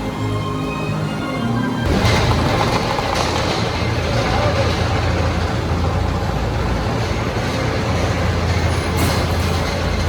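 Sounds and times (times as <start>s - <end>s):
ride vehicle rumbling on rails: 0.1s - 10.0s.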